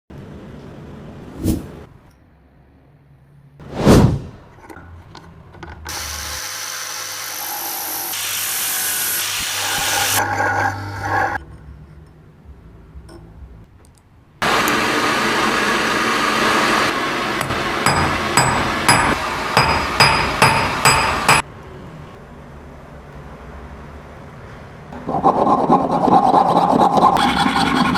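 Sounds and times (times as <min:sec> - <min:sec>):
power tool working metal: 0:05.9 - 0:11.4, 0:14.4 - 0:21.4
sharp ringing metal strikes: 0:17.9 - 0:21.4.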